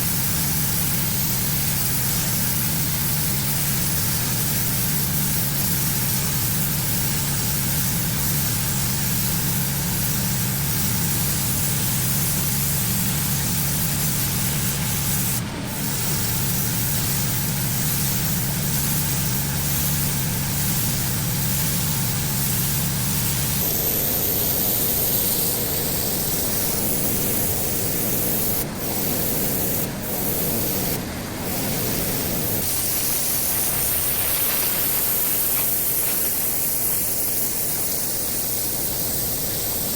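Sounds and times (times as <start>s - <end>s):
high-pressure water spraying: 0.0s - 39.9s
pressure washer engine hum: 8.7s - 39.8s.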